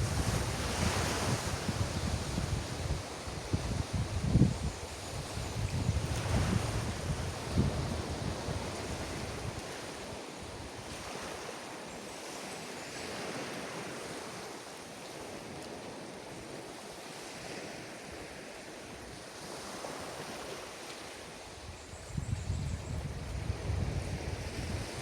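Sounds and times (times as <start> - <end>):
wind rumble on microphone: 0.0 - 11.3, 21.5 - 25.0
waves breaking on beach: 0.0 - 21.9, 23.2 - 25.0.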